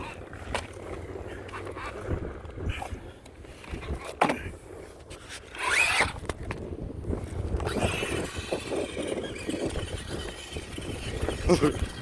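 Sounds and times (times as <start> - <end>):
toy truck electric motor whining: 5.2 - 6.4, 7.5 - 12.0.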